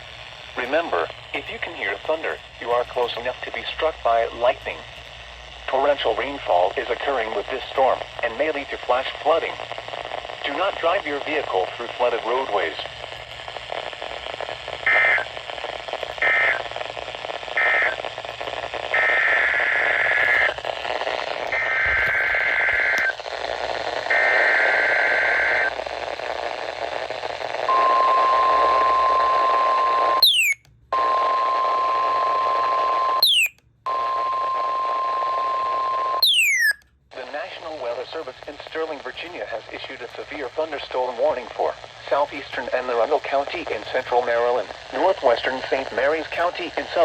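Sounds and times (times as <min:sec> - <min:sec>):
digital header bursts: 0:30.2 - 0:30.6, 0:33.2 - 0:33.5, 0:36.2 - 0:36.8
screeching data tone bursts: 0:30.2 - 0:30.6, 0:33.2 - 0:33.5, 0:36.2 - 0:36.8
short falling chirps: 0:30.2 - 0:30.6, 0:33.2 - 0:33.5, 0:36.2 - 0:36.8
steady alert tone: 0:30.2 - 0:30.6, 0:33.2 - 0:33.5, 0:36.2 - 0:36.8.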